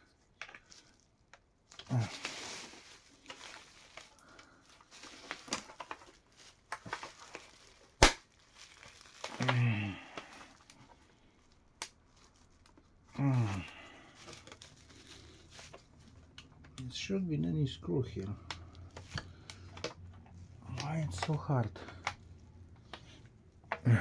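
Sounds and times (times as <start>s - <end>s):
plastic casing creaking and clicking: 5.0s - 7.7s, 14.2s - 17.1s, 18.2s - 23.9s.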